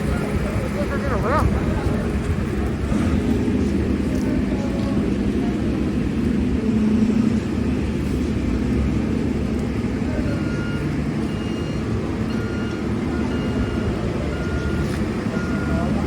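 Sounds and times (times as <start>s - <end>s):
diesel engine of paving machinery: 0.0s - 16.0s
reversing alarm beeping: 10.3s - 16.0s.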